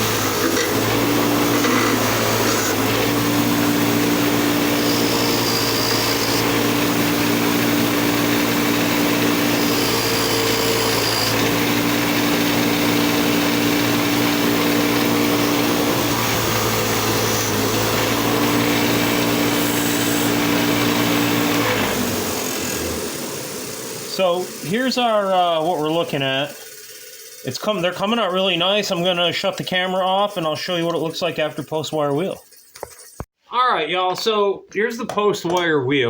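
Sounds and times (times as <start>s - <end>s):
bench grinder motor hum: 0.0s - 29.2s
wire wheel brushing metal: 24.1s - 33.2s.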